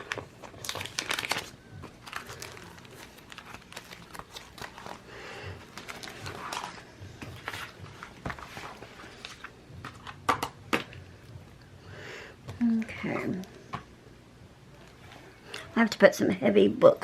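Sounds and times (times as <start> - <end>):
paper rustling and crinkling: 0.0 - 10.9.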